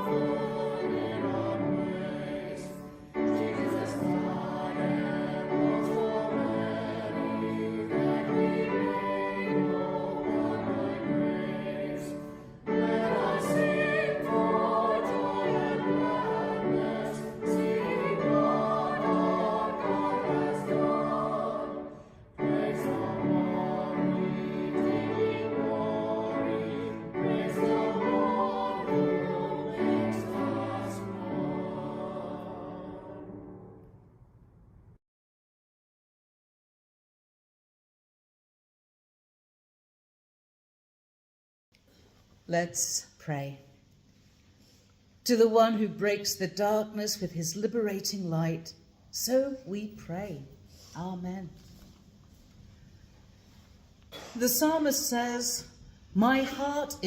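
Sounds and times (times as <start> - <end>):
choir singing with orchestra: 0.0 - 34.1.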